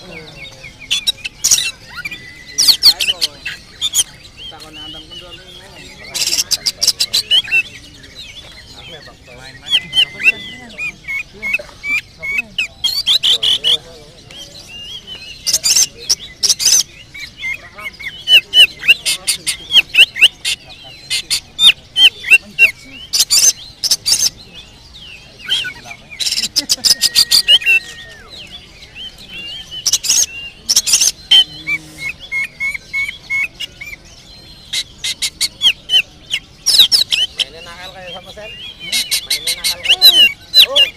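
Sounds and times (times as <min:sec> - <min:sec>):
bird whistled song: 0:00.0 - 0:40.9
harsh rasping bird notes: 0:29.3 - 0:34.0.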